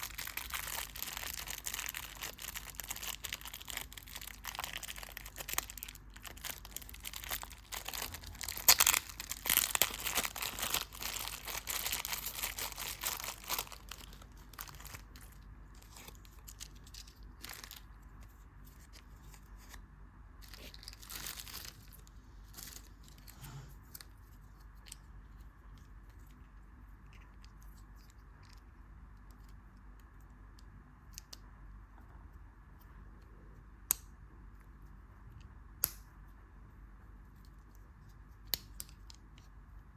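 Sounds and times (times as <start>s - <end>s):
candy wrapper tearing and crinkling: 0.0s - 18.2s, 20.4s - 23.3s.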